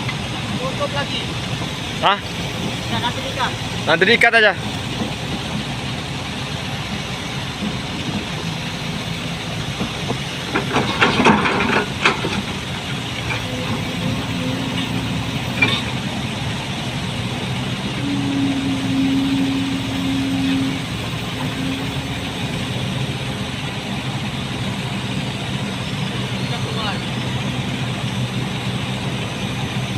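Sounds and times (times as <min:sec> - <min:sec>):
heavy diesel engine running: 0:00.0 - 0:29.9
metal clanks and knocks: 0:09.7 - 0:16.1
higher steady hum: 0:13.2 - 0:29.9.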